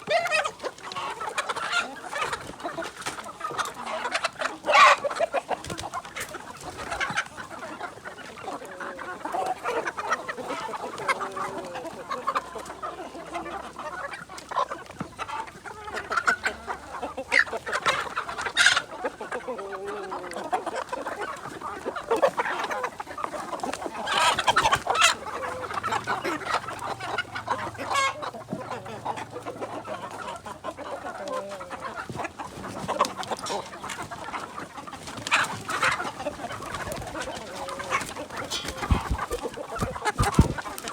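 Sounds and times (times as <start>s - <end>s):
chickens clucking: 0.0s - 40.9s
sharp chicken calls: 0.0s - 40.9s.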